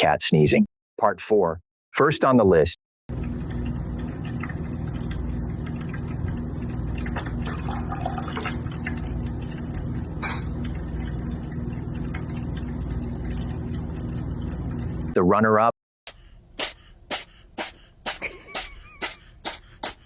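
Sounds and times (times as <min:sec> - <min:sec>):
low hum: 0:03.1 - 0:15.2
cat sneezing: 0:16.6 - 0:20.0.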